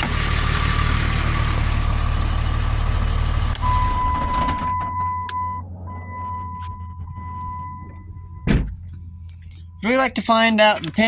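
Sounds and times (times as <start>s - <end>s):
pickup engine idling: 0.0s - 11.0s
electronic warning beep: 3.6s - 10.6s
ignition switch click: 5.0s - 5.5s.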